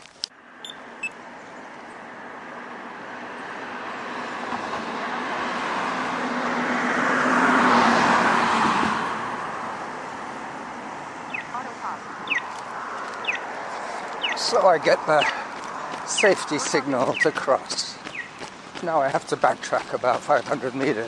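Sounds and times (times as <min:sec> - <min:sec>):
car passing close by: 0:02.1 - 0:17.6.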